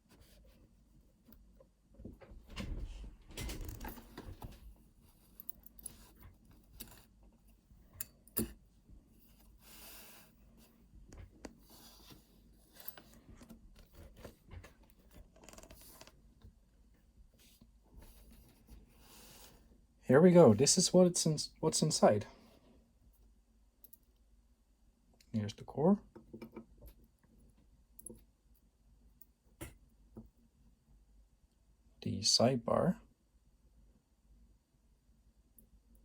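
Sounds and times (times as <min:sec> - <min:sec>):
small metal parts clicking and scraping: 0:05.2 - 0:07.1.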